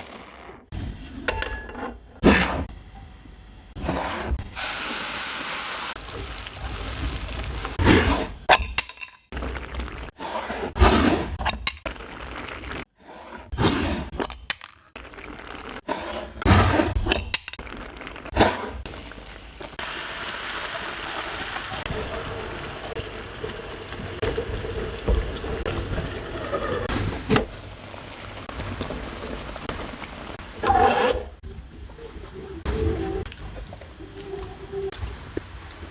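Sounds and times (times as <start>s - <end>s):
utensils and dishes clattering: 1.2s - 2.0s
frying sizzle: 4.6s - 7.8s, 18.9s - 30.6s.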